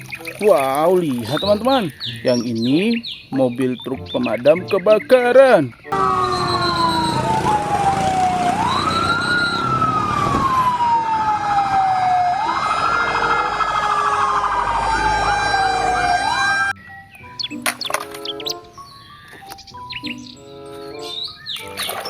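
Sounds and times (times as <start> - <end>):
short siren whoops: 5.9 - 16.7
fire engine siren wailing: 5.9 - 16.8.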